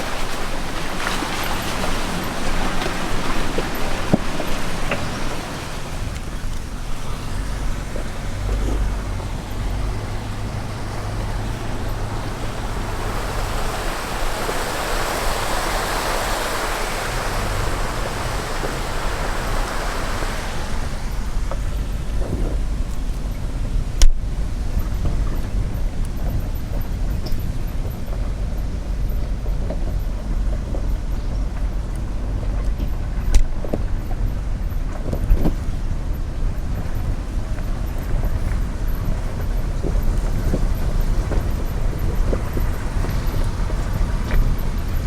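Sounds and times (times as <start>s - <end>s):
pickup engine rumble: 0.0s - 45.0s
tyres on rocky trail: 0.0s - 45.0s.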